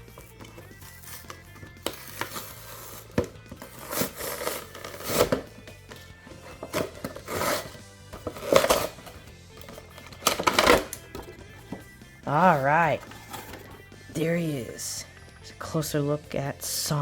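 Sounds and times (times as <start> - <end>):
background music: 0.0 - 17.0
packaging crinkling and tearing: 0.2 - 5.5, 6.6 - 9.1.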